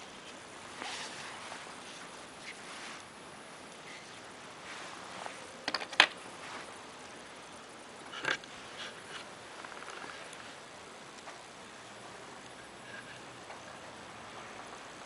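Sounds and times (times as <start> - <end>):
tools clicking and knocking: 5.6 - 6.2
faint rattle: 8.1 - 10.5.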